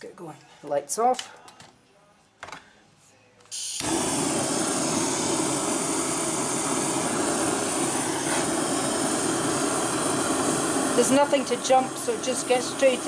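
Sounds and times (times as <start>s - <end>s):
blowtorch flame rushing: 3.6s - 13.0s.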